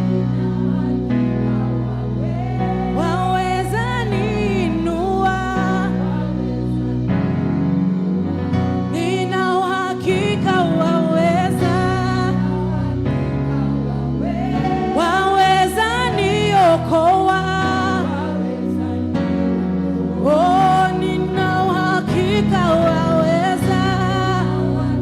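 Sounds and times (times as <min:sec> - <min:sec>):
band and keyboard backing: 0:00.0 - 0:25.0
person singing: 0:08.9 - 0:25.0.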